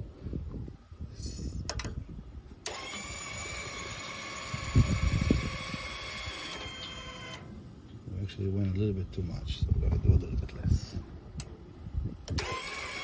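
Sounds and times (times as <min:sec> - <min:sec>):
sharp clicks: 0:01.7 - 0:02.0
gate motor whining: 0:02.6 - 0:07.6, 0:12.2 - 0:13.0.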